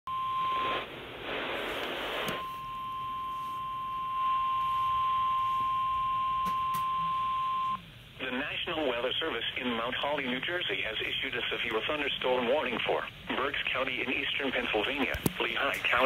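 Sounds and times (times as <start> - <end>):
radio static burst: 0.5 - 2.5, 8.2 - 16.0.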